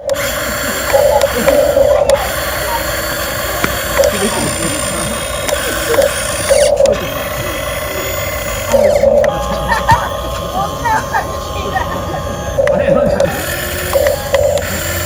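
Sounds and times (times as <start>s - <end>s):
toy electric motors whining: 0.0s - 15.0s.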